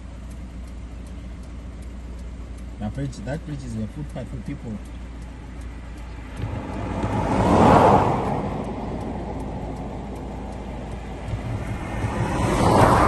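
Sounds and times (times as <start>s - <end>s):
vehicle passing by: 5.1s - 13.0s.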